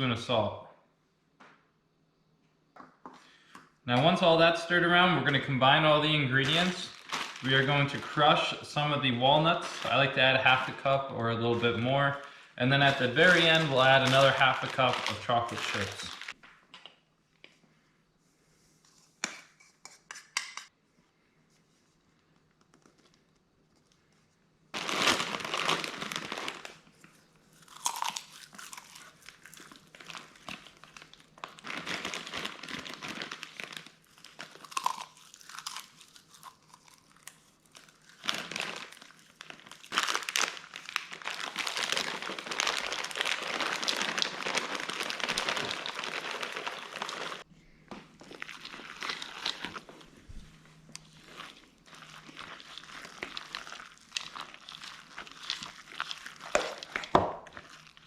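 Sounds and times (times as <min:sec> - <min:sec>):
walnuts crunching: 0:05.3 - 0:08.5, 0:12.3 - 0:16.4, 0:24.8 - 0:50.2, 0:50.9 - 0:58.0.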